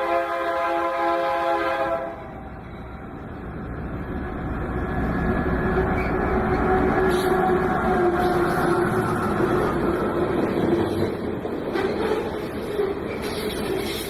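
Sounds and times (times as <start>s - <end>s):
locomotive air horn chord: 0.0s - 2.4s
train rumble: 0.0s - 14.0s.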